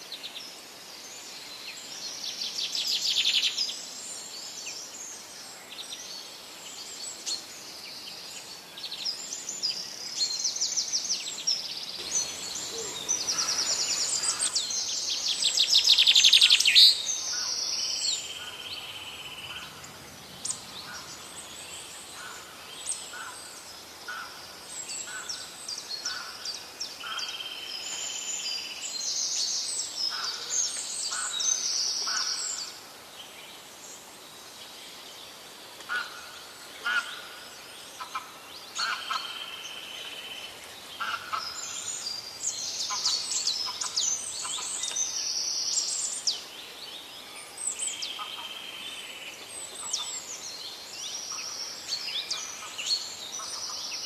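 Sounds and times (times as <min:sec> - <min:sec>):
songbirds singing: 0:00.0 - 0:54.0
bird rapid trill: 0:12.0 - 0:15.0.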